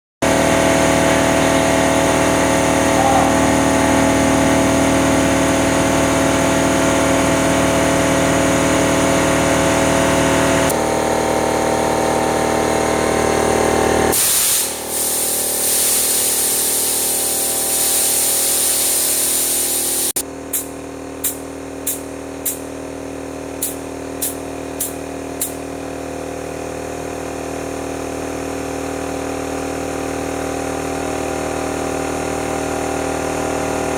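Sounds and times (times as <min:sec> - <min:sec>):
air compressor humming: 0:00.2 - 0:26.7
loud hiss of escaping air: 0:14.1 - 0:22.6
short hisses of air: 0:14.1 - 0:22.6.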